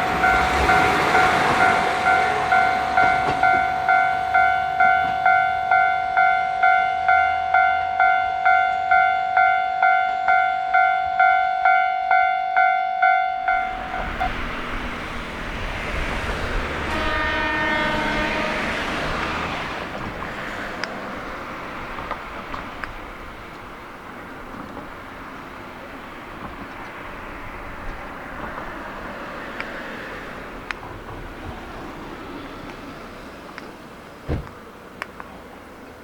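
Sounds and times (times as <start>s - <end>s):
level crossing bell dinging: 0.0s - 14.2s
train horn: 0.0s - 19.9s
diesel railcars rumbling past: 0.0s - 36.0s.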